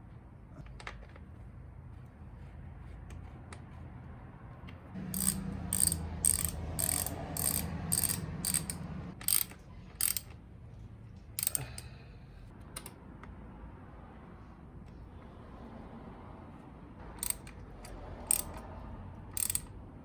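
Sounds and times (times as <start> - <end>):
ratchet wrench clicking: 5.0 - 10.4, 11.4 - 11.8, 17.2 - 18.7, 19.3 - 19.8.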